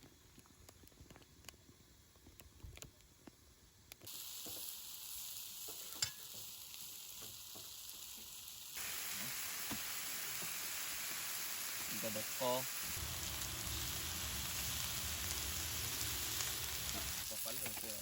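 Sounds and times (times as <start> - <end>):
food sizzling in a pan: 4.1 - 18.0.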